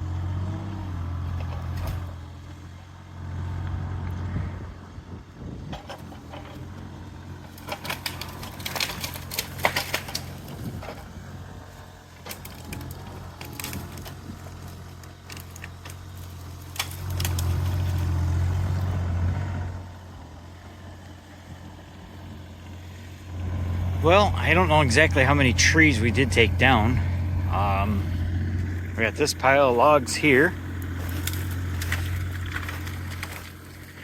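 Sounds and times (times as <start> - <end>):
excavator diesel engine running: 0.0 - 34.0
wood and brush cracking: 1.1 - 2.2, 5.6 - 19.4, 23.3 - 34.0.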